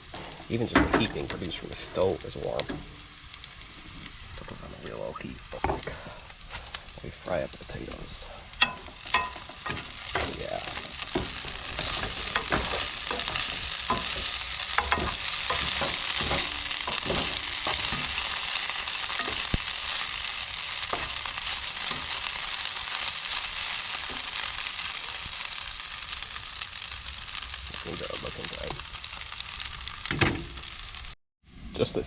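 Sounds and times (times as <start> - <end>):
potatoes sizzling in a pan: 0.0 - 31.2
utensil scraping a pan: 8.6 - 25.2.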